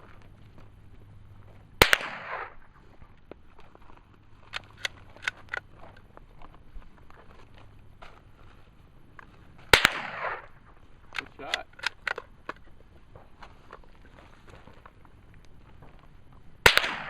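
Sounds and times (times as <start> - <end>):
faint sharp cracks: 0.0 - 17.0
loud gunshot with echo: 1.8 - 2.6, 9.8 - 10.5, 16.6 - 17.0.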